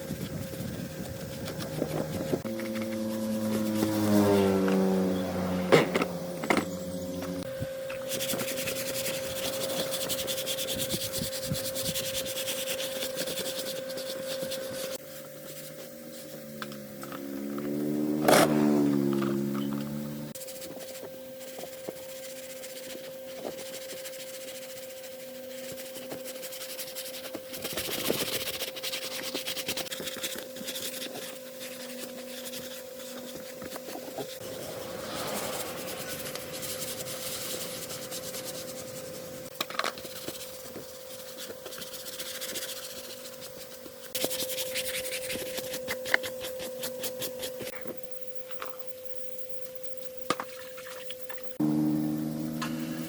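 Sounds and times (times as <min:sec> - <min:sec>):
sanding or filing by hand: 0:00.5 - 0:05.9, 0:07.3 - 0:16.4, 0:20.3 - 0:47.7
steady hum: 0:30.4 - 0:50.4.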